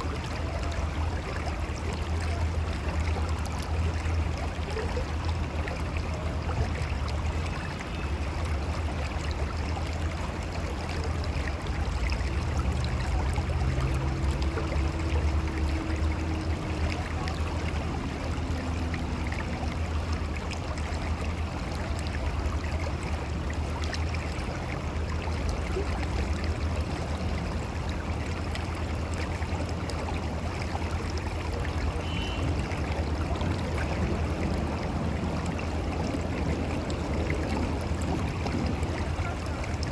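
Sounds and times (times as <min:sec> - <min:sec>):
river flowing over rocks: 0:00.0 - 0:39.9.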